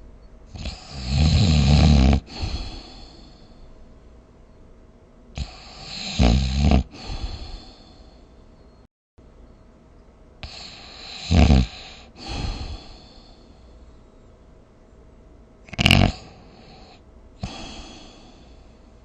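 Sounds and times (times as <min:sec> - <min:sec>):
person snoring: 0:00.5 - 0:03.5, 0:05.4 - 0:08.1, 0:10.4 - 0:13.5, 0:15.7 - 0:18.7
soft breath: 0:02.3 - 0:03.9, 0:06.9 - 0:08.9, 0:10.4 - 0:14.4, 0:16.2 - 0:19.0.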